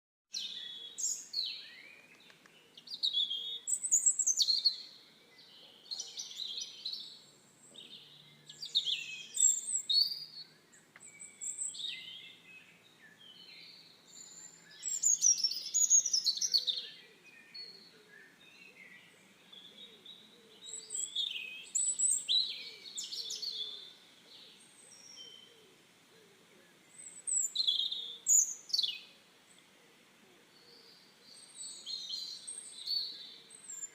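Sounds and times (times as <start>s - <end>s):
songbird chirping and whistling: 2.8s - 5.0s, 7.8s - 19.0s, 20.2s - 25.6s, 26.9s - 29.1s.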